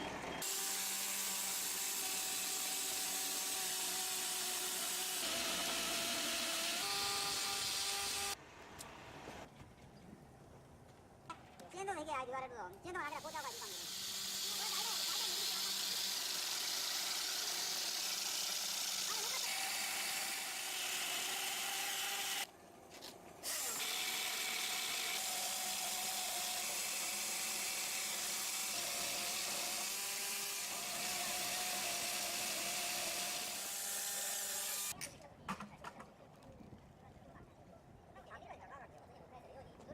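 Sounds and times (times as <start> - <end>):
power saw whining: 0.0 - 8.4, 13.2 - 22.5, 23.4 - 35.0.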